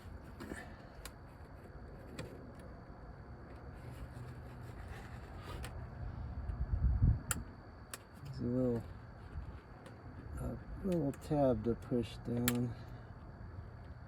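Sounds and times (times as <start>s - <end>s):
sharp clip click: 12.4s - 12.7s.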